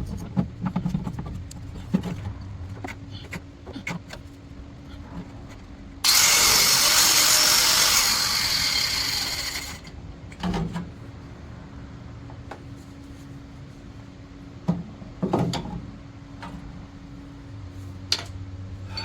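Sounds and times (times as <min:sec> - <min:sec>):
power tool running: 0:06.0 - 0:09.9.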